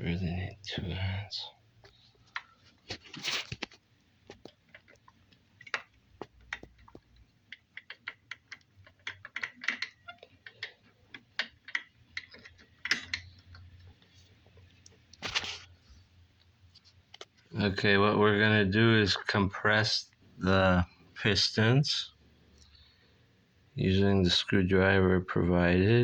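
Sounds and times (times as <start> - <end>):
metal parts and tools clicking: 4.5 - 13.8.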